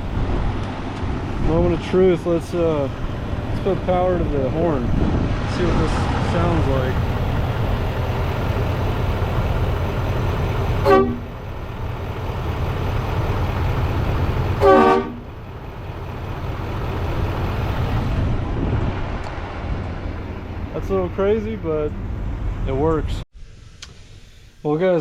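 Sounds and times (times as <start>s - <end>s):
steady low rumble: 0.0s - 24.7s
air horn blasts: 10.8s - 11.4s, 14.6s - 15.3s.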